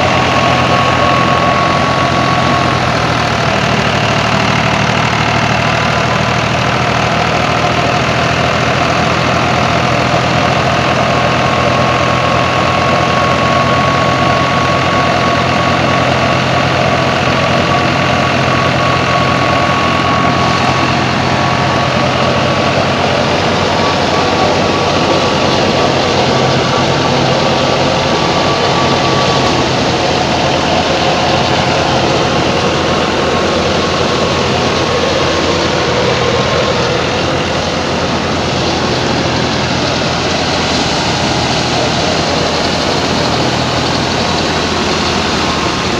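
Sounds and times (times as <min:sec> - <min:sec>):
thin high whine: 0:00.0 - 0:45.9
thresher whirring: 0:00.0 - 0:45.9
tractor diesel engine running: 0:00.0 - 0:45.9.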